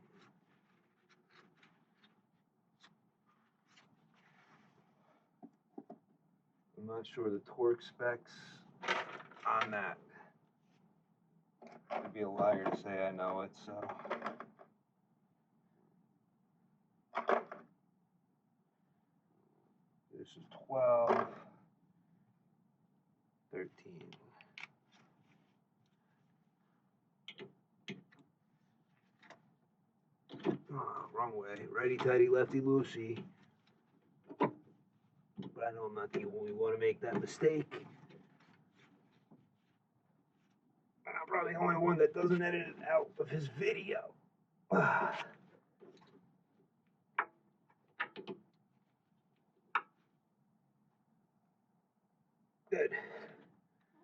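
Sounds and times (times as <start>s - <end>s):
brief vocal sound: 44.7s - 45.3s.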